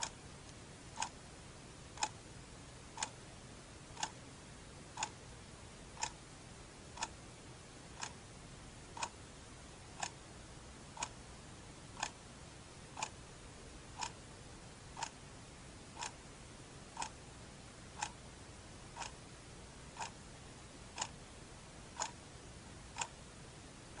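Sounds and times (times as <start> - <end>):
faint steady hiss: 0.0 - 24.0
clock ticking: 1.0 - 1.2, 2.0 - 2.2, 3.0 - 3.2, 4.0 - 4.2, 4.9 - 5.2, 6.0 - 6.2, 7.0 - 7.2, 8.0 - 8.2, 9.0 - 9.2, 10.0 - 10.2, 11.0 - 11.2, 12.0 - 12.2, 13.0 - 13.2, 14.0 - 14.2, 15.0 - 15.2, 16.0 - 16.2, 16.9 - 17.2, 18.0 - 18.2, 19.0 - 19.2, 20.0 - 20.2, 21.0 - 21.2, 22.0 - 22.2, 22.9 - 23.2.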